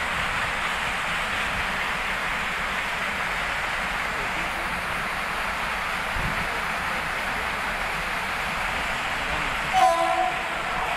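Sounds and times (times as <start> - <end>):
train rushing: 0.0 - 10.9
locomotive horn: 9.7 - 10.9.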